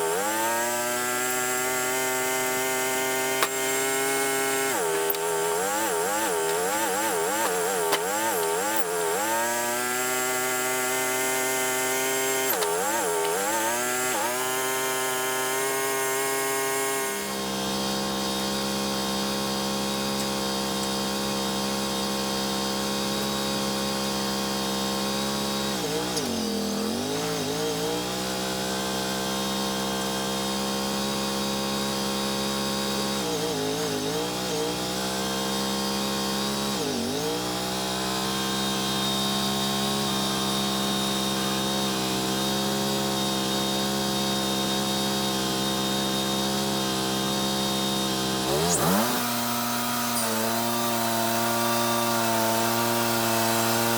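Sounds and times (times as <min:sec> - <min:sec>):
bandsaw mill sawing log: 0:00.0 - 0:53.9.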